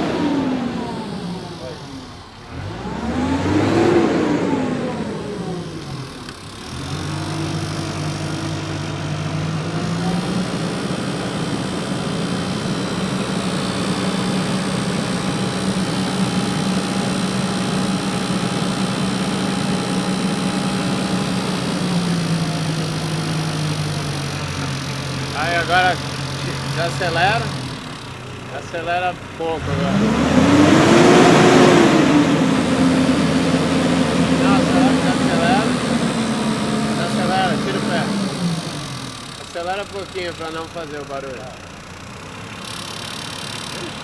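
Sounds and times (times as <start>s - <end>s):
car engine revving: 0.0s - 44.0s.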